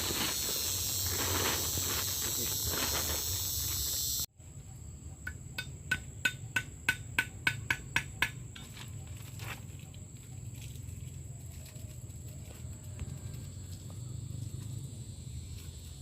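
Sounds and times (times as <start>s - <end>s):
steady hiss: 0.0s - 4.3s.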